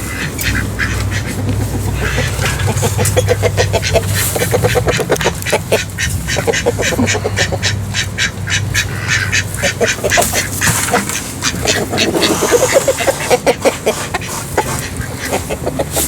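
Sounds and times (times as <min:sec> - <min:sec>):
ducks quacking: 0:00.0 - 0:16.0.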